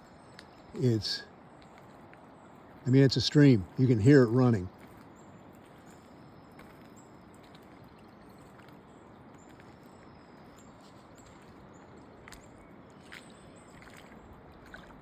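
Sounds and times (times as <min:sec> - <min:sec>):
water rushing across a road: 0:00.7 - 0:01.8, 0:02.6 - 0:04.8.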